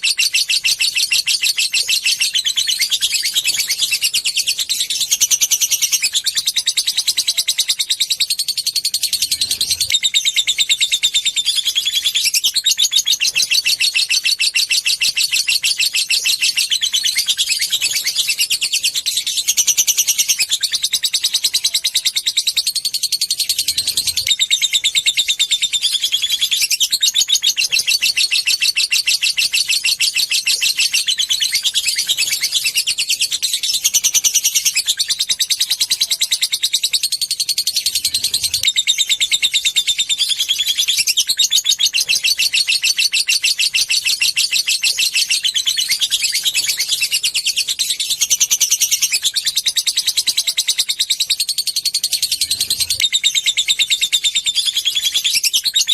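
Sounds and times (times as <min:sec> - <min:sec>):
lovebird chattering: 0:00.0 - 0:55.9.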